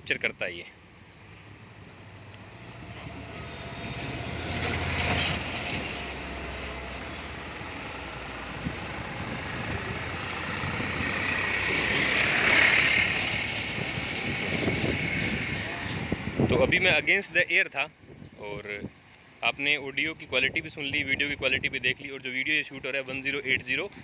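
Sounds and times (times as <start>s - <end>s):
wind and traffic hiss: 0.0s - 24.0s
truck engine rumble passing: 0.8s - 16.4s.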